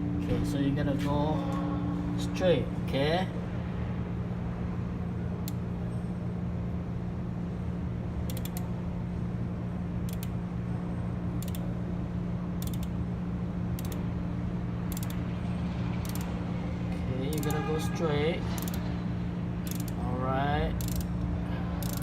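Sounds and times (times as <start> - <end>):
low hum: 0.0 - 22.0
ratchet wrench clicking: 8.2 - 8.7, 10.0 - 10.4, 11.4 - 11.7, 12.6 - 13.0, 13.7 - 14.0, 14.8 - 15.3, 16.0 - 16.4, 17.3 - 17.6, 18.4 - 18.9, 19.6 - 20.0, 20.7 - 21.2, 21.8 - 22.0.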